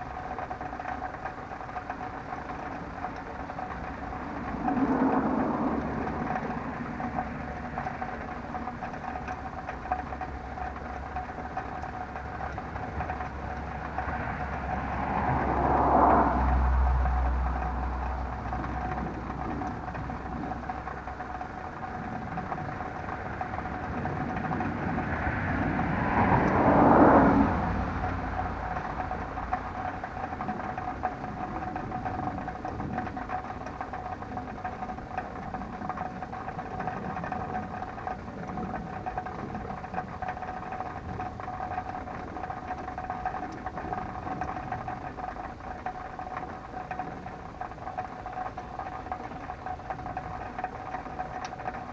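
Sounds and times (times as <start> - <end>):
faint steady whine: 0.0 - 51.9
motor vehicle passing by: 3.8 - 8.4, 13.5 - 20.1, 23.0 - 30.7.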